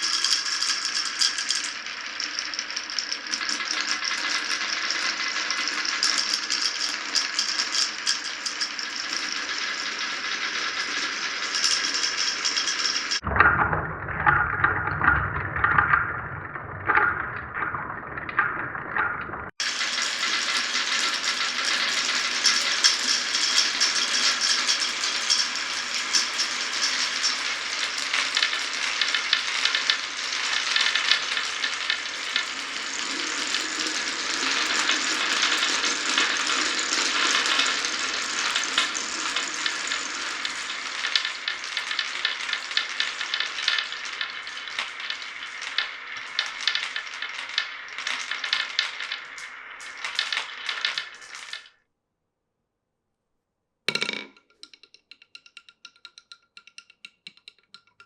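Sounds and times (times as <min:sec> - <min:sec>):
marbles rattling down wooden run: 0:00.0 - 0:51.8, 0:53.9 - 0:57.8.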